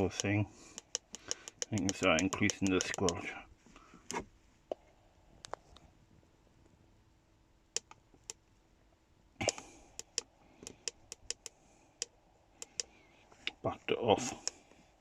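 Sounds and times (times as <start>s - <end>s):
radio control clicks: 0.0s - 3.2s, 7.8s - 8.4s, 9.4s - 11.5s.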